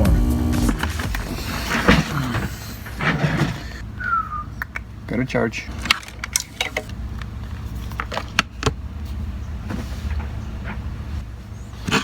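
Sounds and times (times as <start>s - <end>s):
low hum: 0.0s - 5.0s.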